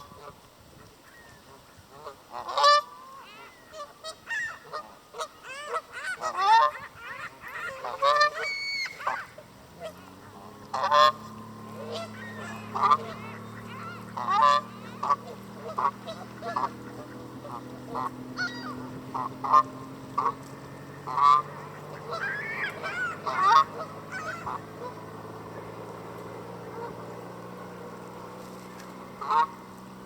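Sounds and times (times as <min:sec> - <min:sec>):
goose honking: 0:01.2 - 0:30.0
steady low hum: 0:04.9 - 0:30.0.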